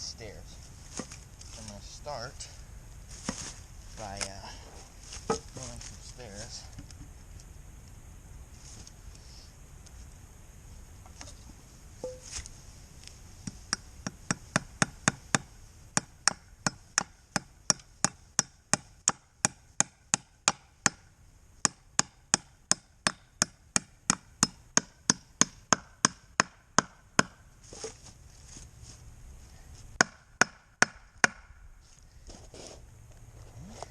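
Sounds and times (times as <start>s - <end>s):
hammer striking nails into wood: 13.4s - 21.0s, 21.6s - 27.4s, 30.0s - 31.5s.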